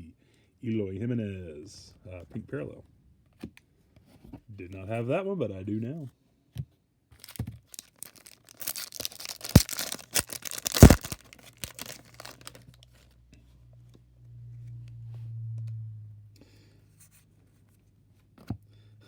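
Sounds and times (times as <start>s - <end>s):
plastic wrapper crinkling: 7.2s - 12.9s
sharp plastic snaps: 8.1s - 12.6s.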